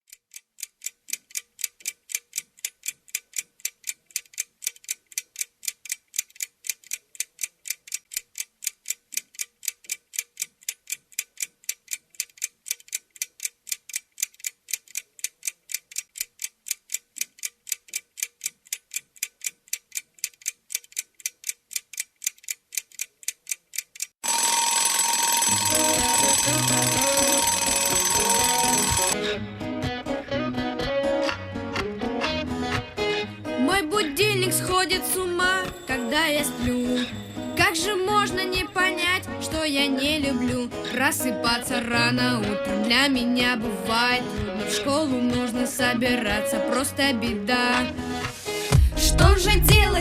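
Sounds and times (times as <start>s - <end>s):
alarm clock ringing: 24.2s - 29.2s
music: 29.2s - 50.0s.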